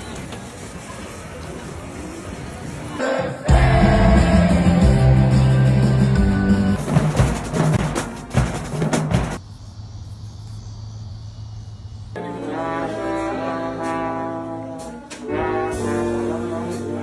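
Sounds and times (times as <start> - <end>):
brass band playing: 3.5 - 9.4, 12.2 - 17.0
trombone and trumpet chords: 3.5 - 9.4, 12.2 - 17.0
low steady brass note: 12.2 - 17.0.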